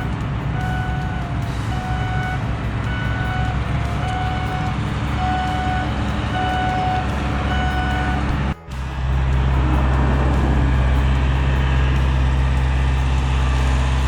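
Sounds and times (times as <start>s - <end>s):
reversing alarm beeping: 0.0s - 8.6s
diesel engine running: 0.0s - 14.0s.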